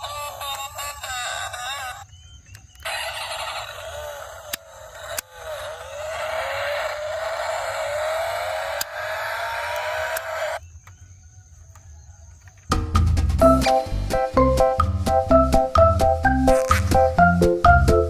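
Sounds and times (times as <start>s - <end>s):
car engine revving whine: 5.2s - 10.6s.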